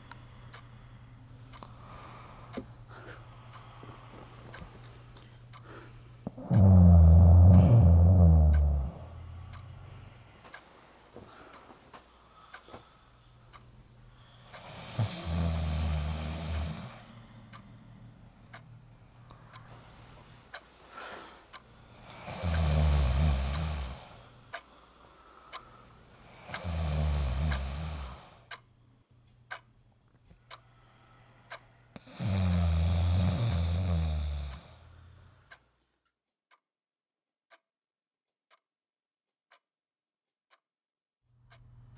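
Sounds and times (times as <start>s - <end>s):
clock ticking faintly: 0.0s - 30.8s, 31.4s - 34.7s, 35.5s - 36.6s, 41.4s - 41.9s
person snoring loudly: 6.3s - 9.9s, 14.7s - 17.0s, 22.1s - 24.2s, 26.5s - 28.3s, 32.0s - 34.9s.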